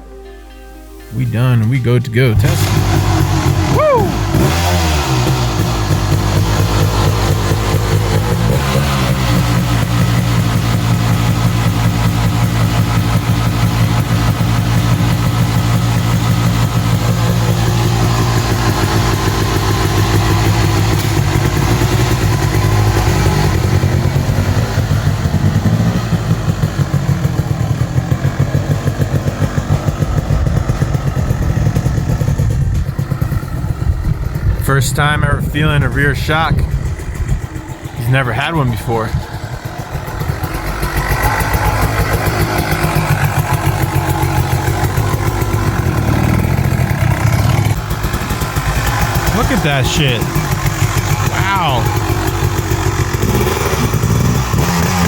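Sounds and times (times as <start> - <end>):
dirt bike engine running: 2.3 - 55.0.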